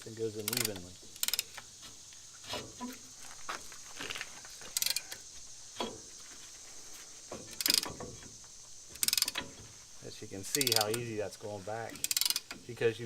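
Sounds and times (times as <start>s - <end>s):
brake pad spreader ratcheting: 0.0s - 3.1s, 3.9s - 6.1s, 7.3s - 9.7s, 10.3s - 12.9s.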